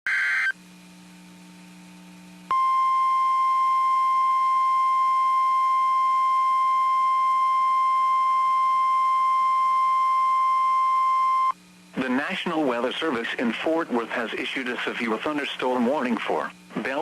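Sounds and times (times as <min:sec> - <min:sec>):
steady alarm tone: 0:00.1 - 0:00.5.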